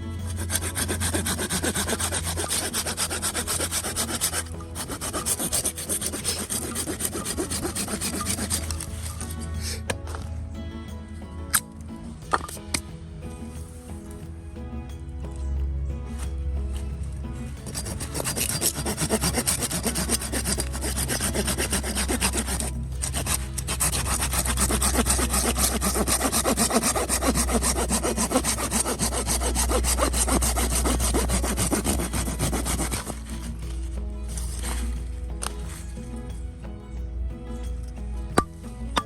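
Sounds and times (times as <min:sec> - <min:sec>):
hand saw cutting wood: 0:00.0 - 0:10.2, 0:17.5 - 0:36.2.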